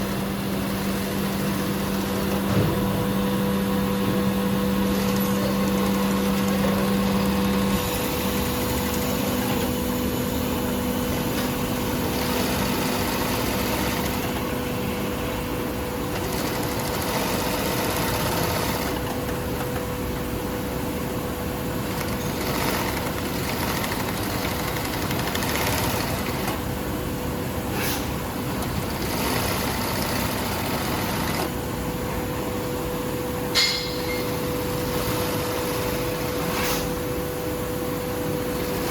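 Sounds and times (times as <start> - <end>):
sewing machine motor humming: 11.7 - 14.5, 16.1 - 19.7, 21.9 - 26.6, 28.5 - 31.5.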